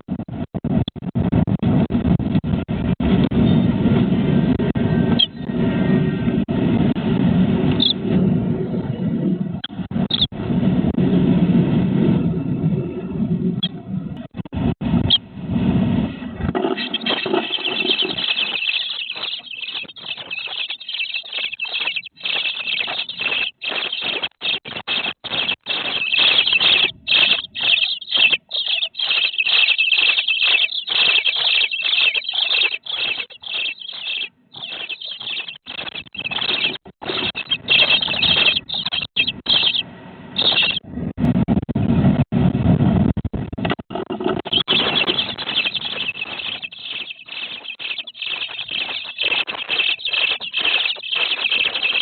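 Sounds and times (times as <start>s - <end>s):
fluttering wings and scuffling: 16.4s - 39.8s, 44.0s - 52.0s
nestlings begging squeals: 16.6s - 39.8s, 40.4s - 40.8s, 44.5s - 52.0s.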